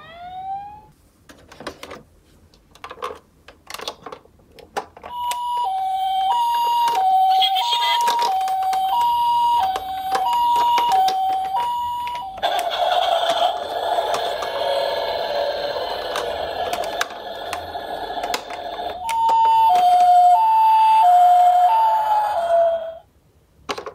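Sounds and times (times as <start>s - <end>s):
toy ambulance two-tone siren: 0.0s - 0.9s, 5.1s - 23.1s
plastic toy car clicks: 8.0s - 9.0s, 9.6s - 11.6s, 16.0s - 20.2s, 23.7s - 23.9s.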